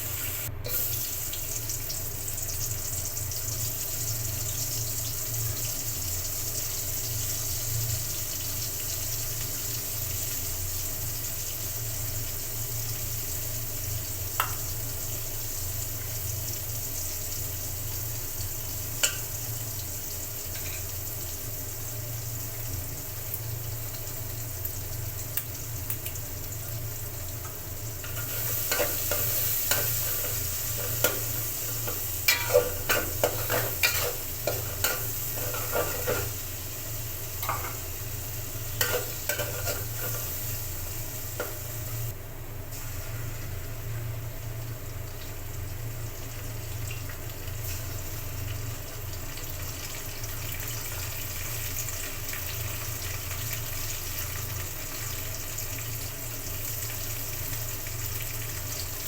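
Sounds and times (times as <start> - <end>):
food sizzling in hot oil: 0.0 - 59.0
spatula scraping a pan: 28.0 - 36.4, 38.8 - 40.6.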